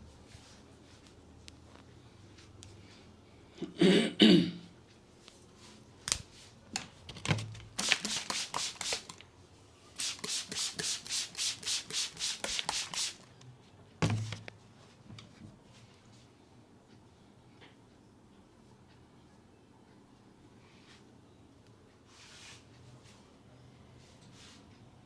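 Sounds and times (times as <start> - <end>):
hands rubbing hair: 7.8 - 9.2, 10.0 - 13.3.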